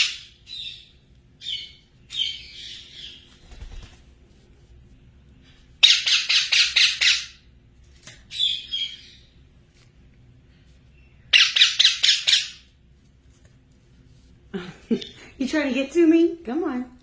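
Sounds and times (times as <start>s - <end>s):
parrot squawking: 5.8s - 7.5s, 11.3s - 12.7s.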